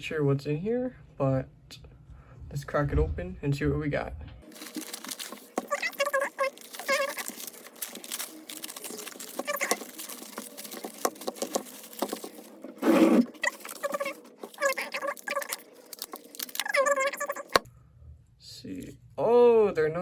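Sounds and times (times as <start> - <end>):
loud rustle of packaging: 4.4 - 17.6
plastic packaging crinkling: 4.4 - 17.7.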